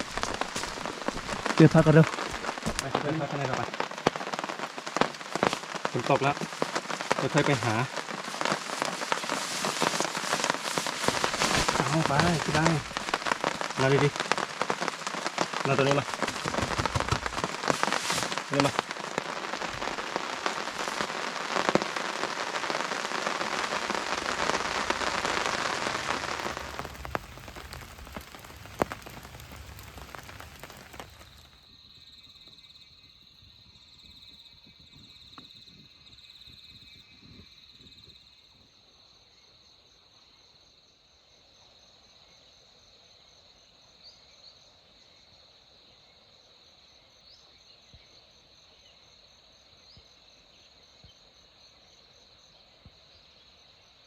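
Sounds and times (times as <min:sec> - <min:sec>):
heavy rain falling: 0:00.0 - 0:31.6
insects chirring: 0:00.0 - 0:54.0.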